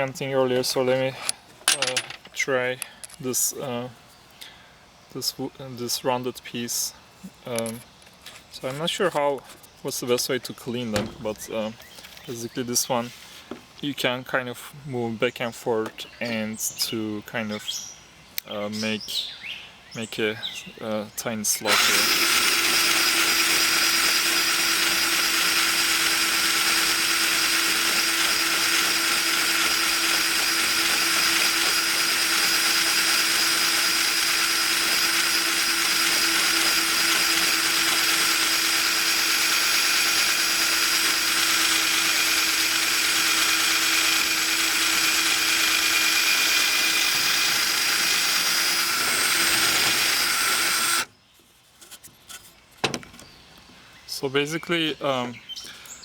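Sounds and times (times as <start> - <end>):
electric drill rasping wood: 21.6 - 51.1.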